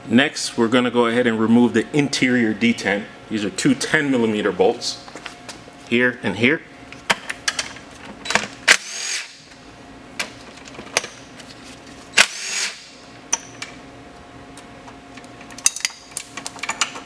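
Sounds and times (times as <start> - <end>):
power tool whirring: 8.7 - 9.4, 12.2 - 12.9
metal parts clicking and clinking: 15.2 - 17.0.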